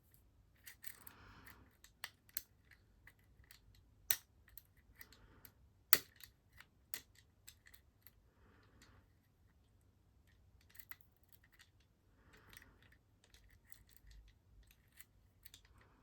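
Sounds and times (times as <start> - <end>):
lock picks clicking and scraping: 0.1 - 9.6, 10.2 - 16.0.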